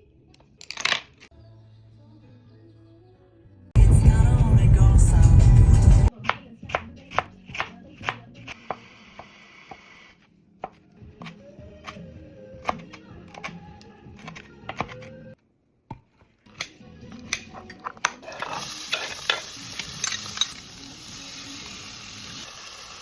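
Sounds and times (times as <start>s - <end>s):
loud music: 3.8s - 6.1s
knife chopping on cutting board: 6.2s - 9.8s, 14.2s - 15.1s.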